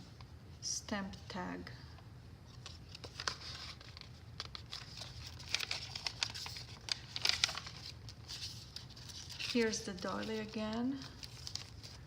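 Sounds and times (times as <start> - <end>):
paper pages rustling: 2.5 - 12.0.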